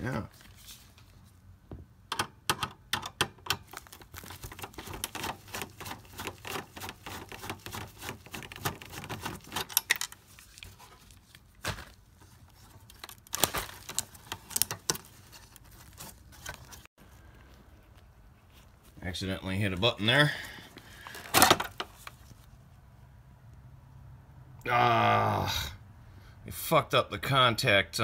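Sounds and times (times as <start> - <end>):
plastic and metal parts clicking: 2.1 - 10.2, 12.8 - 15.5.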